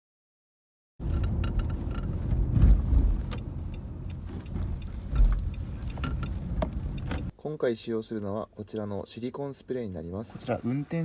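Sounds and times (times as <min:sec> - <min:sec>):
car cabin low rumble: 0:01.0 - 0:07.3
seat clicks and creaks: 0:01.0 - 0:07.3.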